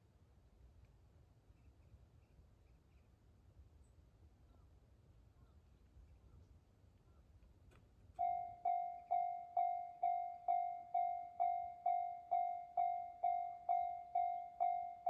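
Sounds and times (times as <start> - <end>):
level crossing warning bell ringing: 8.2 - 15.0.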